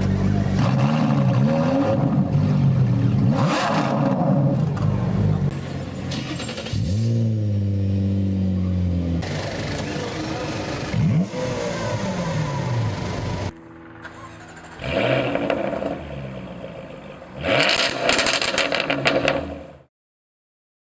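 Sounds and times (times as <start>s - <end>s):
car engine revving: 0.0s - 5.5s, 6.2s - 19.9s
exhaust cracks: 17.6s - 19.6s.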